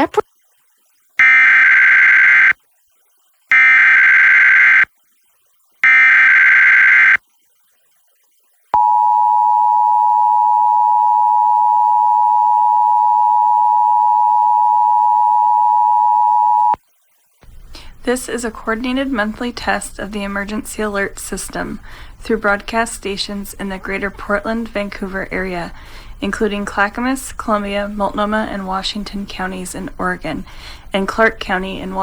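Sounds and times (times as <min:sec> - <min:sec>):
shrill warbling digital bursts: 0:01.2 - 0:02.5, 0:03.5 - 0:04.8, 0:05.8 - 0:07.2
steady two-tone attention signal: 0:08.8 - 0:16.8.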